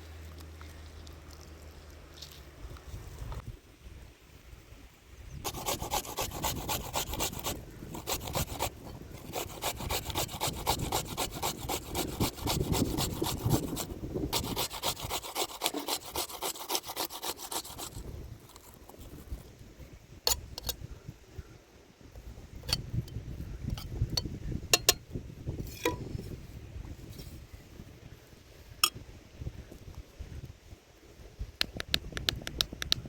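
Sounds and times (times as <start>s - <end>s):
potato grating: 5.4s - 19.4s.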